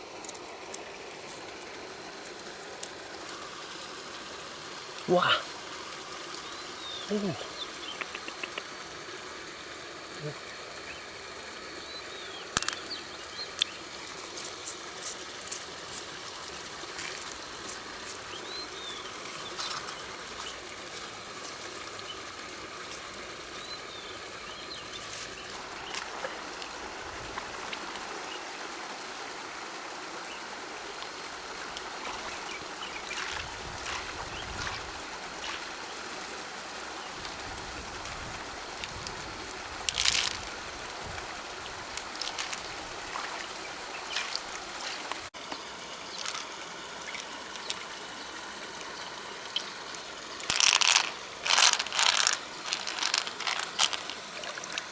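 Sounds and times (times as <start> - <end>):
river water flowing: 0.0 - 54.9
steady high-pitched buzz: 3.3 - 26.5.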